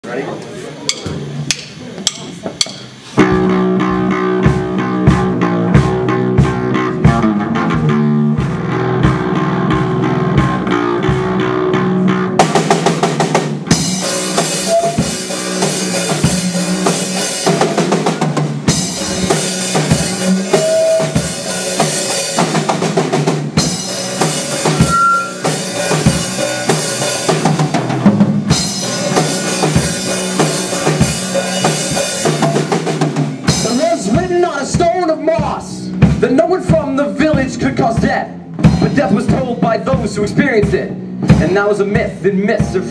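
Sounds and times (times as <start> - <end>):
drum kit beat: 0.8 - 42.9
rock band playing: 0.8 - 42.9
cymbals crashing: 13.7 - 27.8.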